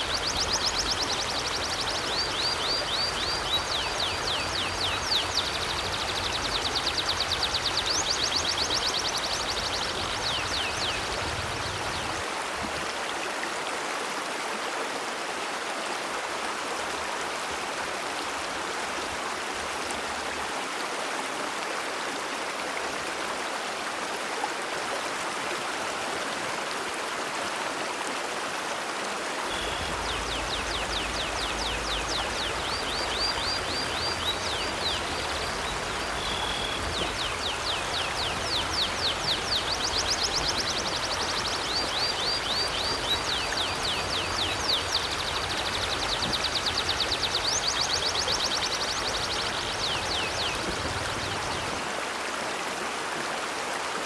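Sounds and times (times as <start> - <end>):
bird singing: 0.0 - 11.2, 29.5 - 50.7
river water rushing: 0.0 - 54.0.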